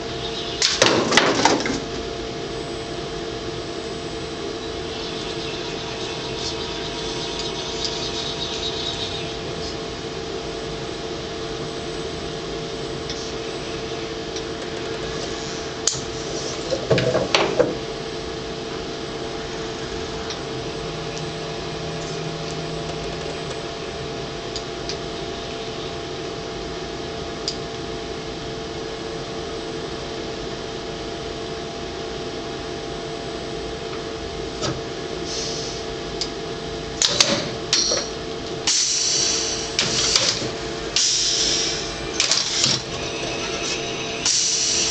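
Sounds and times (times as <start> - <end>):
machinery humming: 0.0 - 44.9
motor whine: 0.0 - 44.9
machine clunks and clicks: 37.0 - 38.1.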